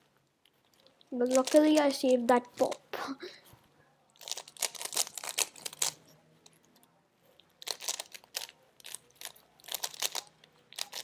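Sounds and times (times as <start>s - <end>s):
plastic puzzle cube clicking: 0.8s - 2.8s, 4.2s - 6.6s, 7.6s - 11.0s.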